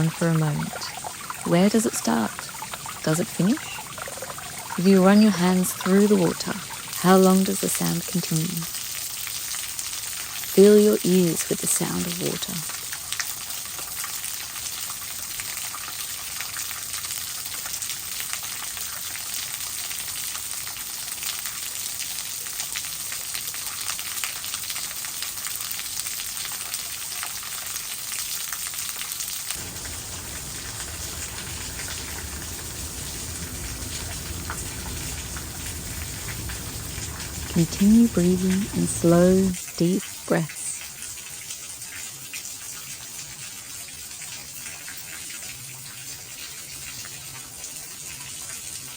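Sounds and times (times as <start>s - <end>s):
deep rumble: 29.6s - 39.5s
waterfall rushing: 29.6s - 39.6s.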